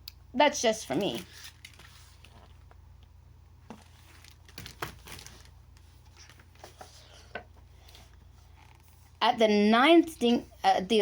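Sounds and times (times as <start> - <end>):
book pages turning: 0.9 - 2.8, 3.6 - 9.1.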